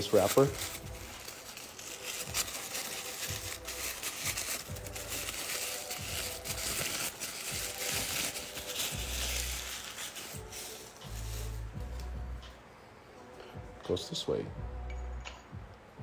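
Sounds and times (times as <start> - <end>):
wrapper crinkling: 0.0 - 11.8.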